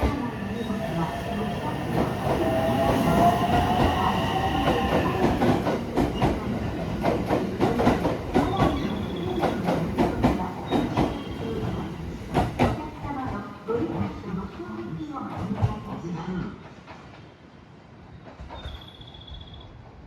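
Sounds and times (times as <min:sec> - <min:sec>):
train whine: 0:00.0 - 0:12.1.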